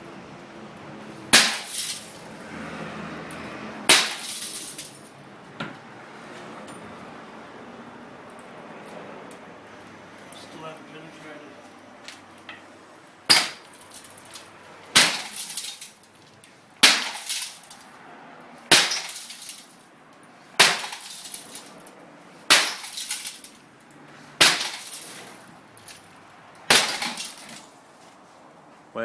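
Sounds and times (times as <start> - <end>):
glass crackling: 1.3 - 2.4, 3.9 - 5.1, 13.2 - 17.9, 18.7 - 21.9, 22.5 - 27.7.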